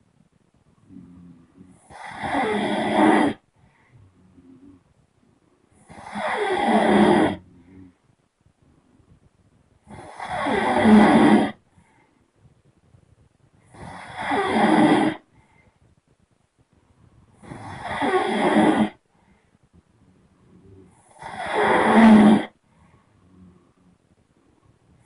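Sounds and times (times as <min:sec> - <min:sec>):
person snoring: 0:00.9 - 0:04.8, 0:05.8 - 0:07.9, 0:09.9 - 0:11.6, 0:13.7 - 0:15.3, 0:17.4 - 0:19.0, 0:20.5 - 0:22.6, 0:23.2 - 0:24.0.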